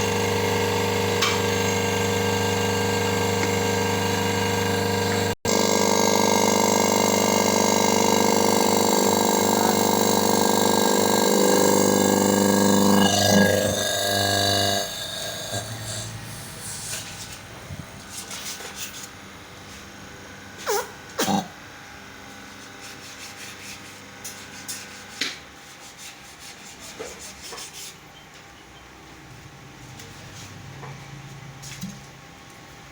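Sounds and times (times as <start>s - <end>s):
machine humming: 0.0s - 18.1s.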